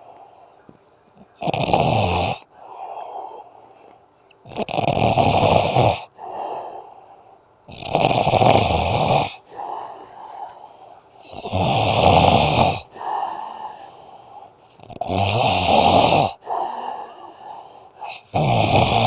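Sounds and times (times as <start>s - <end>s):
soft breathing: 0.0s - 1.4s, 2.4s - 4.4s, 6.0s - 15.1s, 16.3s - 18.4s
man snoring: 1.4s - 3.5s, 4.4s - 6.9s, 7.7s - 19.0s.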